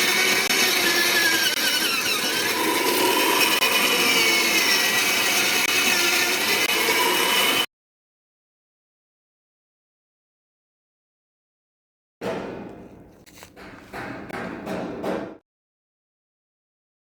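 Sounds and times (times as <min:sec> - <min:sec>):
soil drill auger grinding: 0:00.0 - 0:07.7.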